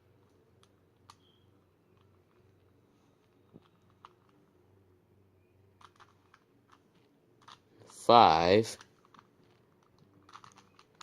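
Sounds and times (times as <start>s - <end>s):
puzzle cube clicking: 5.7s - 8.0s, 8.6s - 11.0s.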